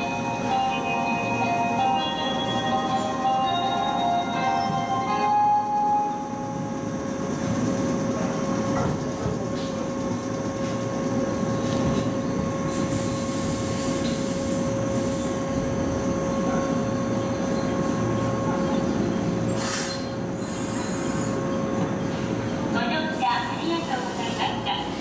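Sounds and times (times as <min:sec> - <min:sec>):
electric train rumbling: 0:00.0 - 0:25.0.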